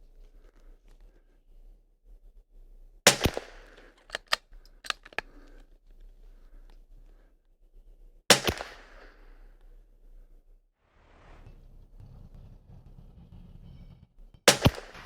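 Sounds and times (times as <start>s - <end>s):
rifle shots with echo: 3.1s - 3.9s, 8.3s - 9.2s, 14.5s - 15.0s
rifle action clicks: 3.1s - 5.6s.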